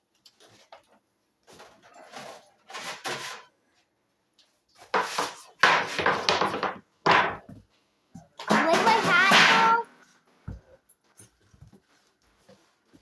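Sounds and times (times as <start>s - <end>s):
metal baking pan clattering: 5.0s - 7.4s, 8.4s - 9.9s.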